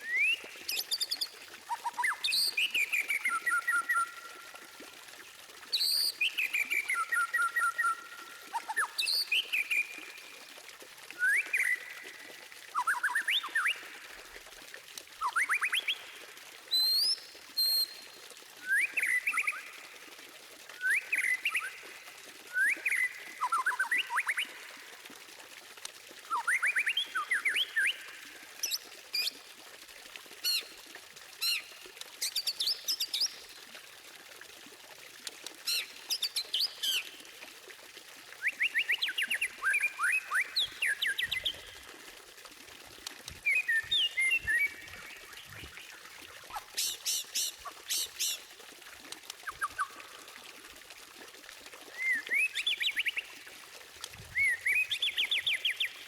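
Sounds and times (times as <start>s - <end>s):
bird singing rapid phrases: 38.7s - 41.8s, 43.4s - 45.9s, 46.5s - 48.5s, 49.4s - 50.1s.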